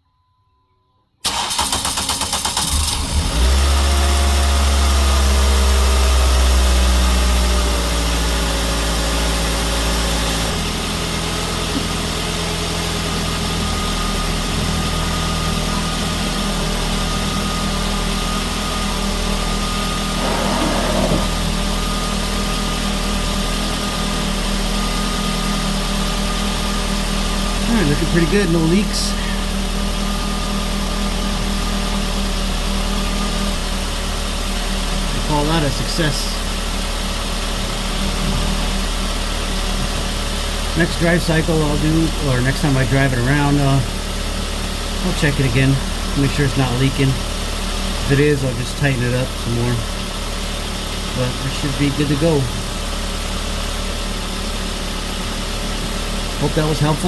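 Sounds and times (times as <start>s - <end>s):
starter cranking engine: 1.2s - 3.9s
car engine idling: 1.3s - 57.0s.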